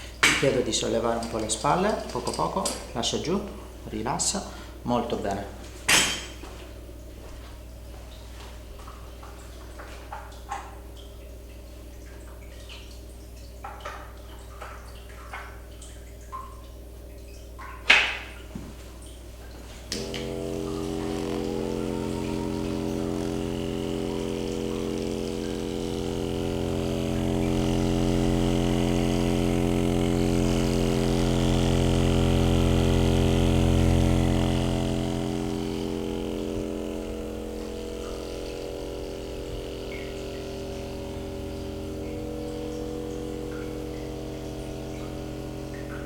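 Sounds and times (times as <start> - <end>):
small motor humming: 19.9 - 46.0.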